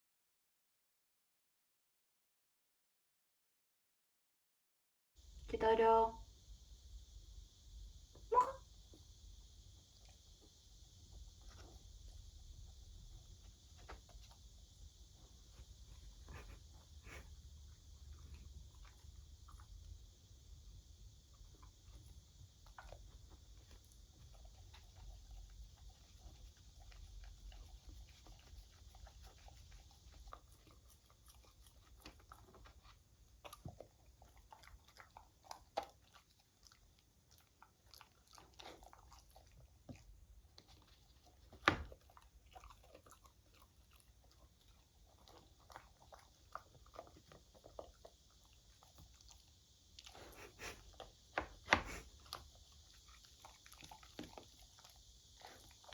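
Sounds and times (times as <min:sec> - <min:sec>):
dog licking and chewing: 0:09.8 - 0:20.2, 0:21.2 - 0:55.9.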